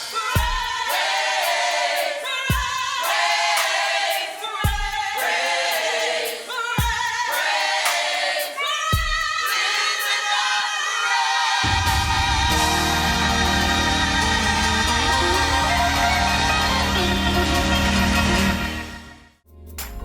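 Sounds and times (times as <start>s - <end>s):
steady low drum beat: 0.0s - 1.7s, 2.5s - 3.8s, 4.4s - 5.8s, 6.8s - 7.4s, 8.9s - 9.5s, 11.7s - 18.6s
youth choir singing gospel: 0.0s - 19.2s.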